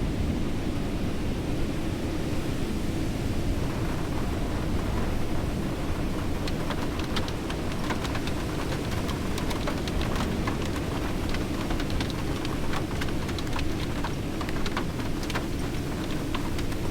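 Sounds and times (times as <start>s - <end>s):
rain drops ticking: 3.5s - 16.9s.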